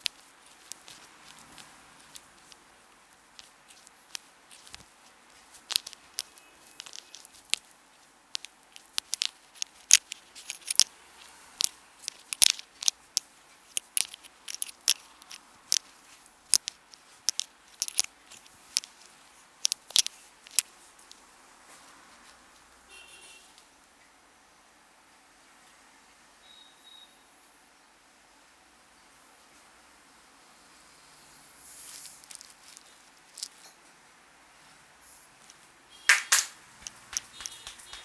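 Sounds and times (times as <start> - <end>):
hands massaging hair and scalp: 0.0 - 21.0, 36.1 - 38.0.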